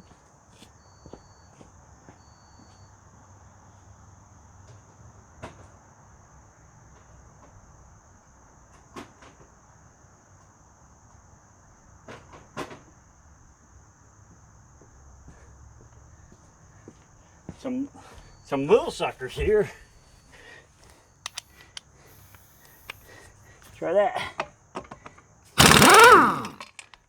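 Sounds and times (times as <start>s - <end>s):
socket wrench and lug nuts clicking: 25.6s - 26.9s.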